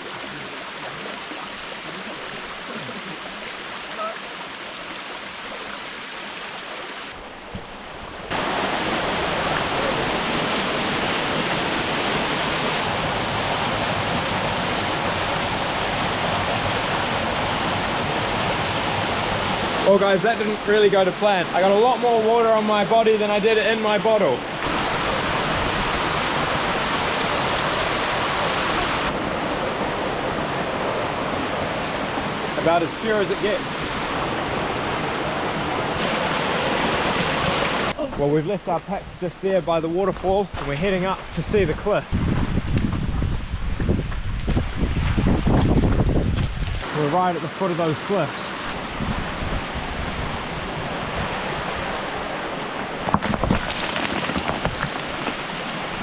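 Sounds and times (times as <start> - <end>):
small waterfall splashing: 0.0 - 38.0, 46.8 - 49.0, 51.3 - 56.0
footsteps on loose rock: 53.0 - 55.4.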